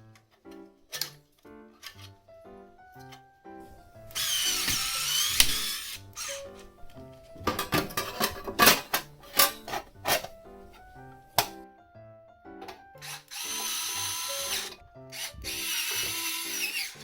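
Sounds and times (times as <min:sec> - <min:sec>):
background music: 0:00.0 - 0:17.0
electric screwdriver whine: 0:04.2 - 0:06.4, 0:13.0 - 0:17.0.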